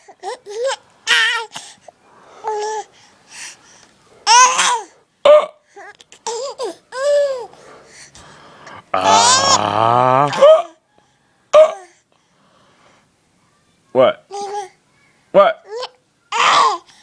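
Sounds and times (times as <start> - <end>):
baby babbling and squealing: 4.2 - 4.9, 9.0 - 9.7, 14.3 - 15.1, 15.7 - 16.9
baby hiccups: 4.3 - 5.6, 8.9 - 10.8, 11.6 - 11.9, 16.3 - 16.8.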